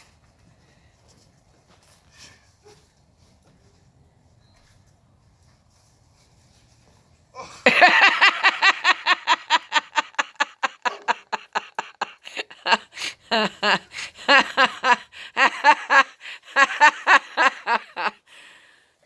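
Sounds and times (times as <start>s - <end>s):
person laughing hard: 7.4s - 18.2s.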